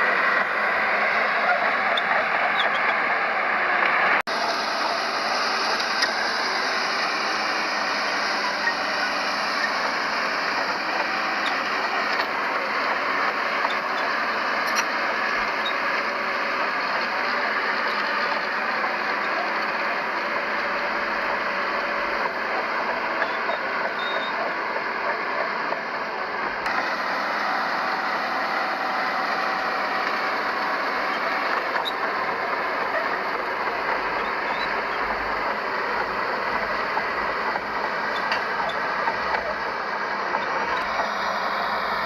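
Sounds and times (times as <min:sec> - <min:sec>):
heavy machinery diesel engines: 0:00.0 - 0:42.0.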